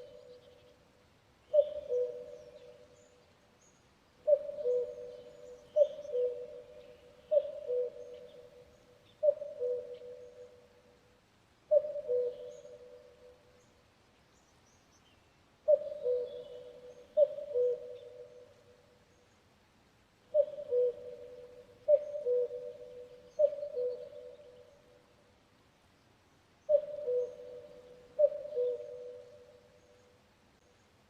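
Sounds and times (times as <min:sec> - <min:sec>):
cuckoo calling: 0:00.0 - 0:00.6, 0:01.5 - 0:03.1, 0:04.2 - 0:08.6, 0:09.2 - 0:10.6, 0:11.7 - 0:13.4, 0:15.7 - 0:18.5, 0:20.3 - 0:24.8, 0:26.7 - 0:30.0.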